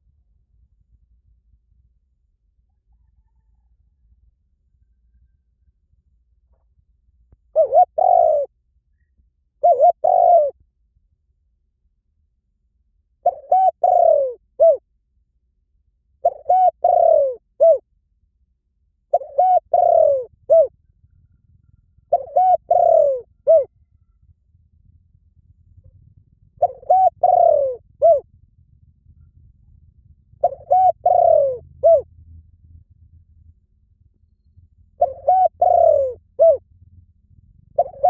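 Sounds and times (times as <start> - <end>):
dove cooing: 7.5 - 8.5, 9.6 - 10.6, 13.2 - 14.8, 16.2 - 17.8, 19.1 - 24.2, 25.4 - 28.3, 30.3 - 32.1, 35.0 - 36.6, 37.7 - 38.0.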